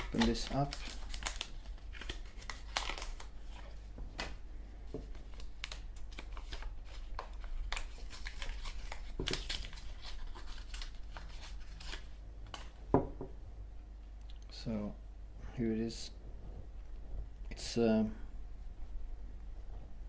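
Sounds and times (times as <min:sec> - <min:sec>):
packaging crinkling and tearing: 0:00.0 - 0:04.4, 0:05.1 - 0:12.8.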